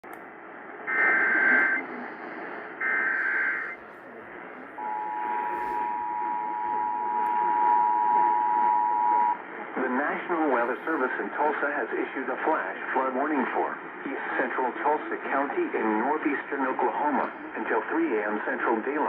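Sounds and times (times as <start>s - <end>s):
radio static hiss: 0.0s - 19.0s
two-tone attention signal: 4.8s - 9.4s.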